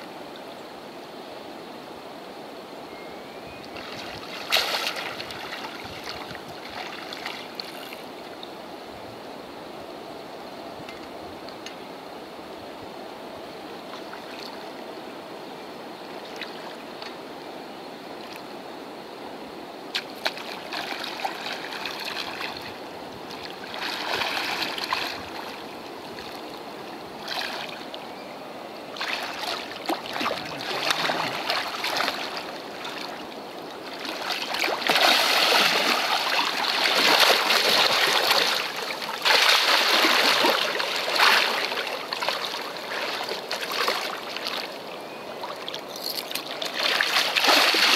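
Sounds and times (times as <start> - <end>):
water splashing and sloshing: 3.6 - 8.4, 13.9 - 14.8, 19.9 - 28.0, 28.9 - 47.9.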